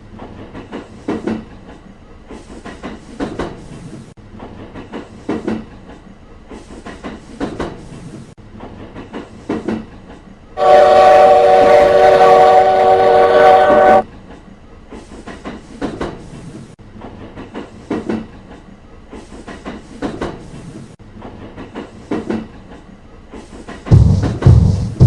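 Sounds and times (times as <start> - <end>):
train wheels clacking over rail joints: 0.0 - 25.0
train horn: 10.6 - 14.1.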